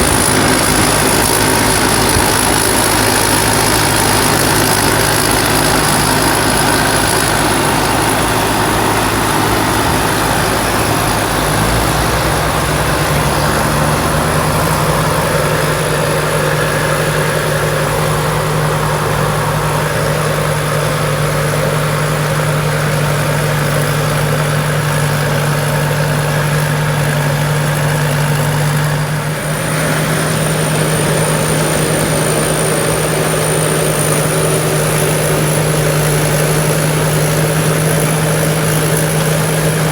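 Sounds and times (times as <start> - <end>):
combine harvester engine running: 0.0 - 39.9
thin high whine: 0.0 - 39.9.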